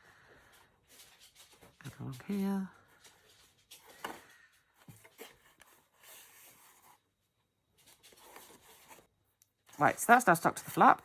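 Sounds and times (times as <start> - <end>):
paper card rustling: 7.8 - 11.0.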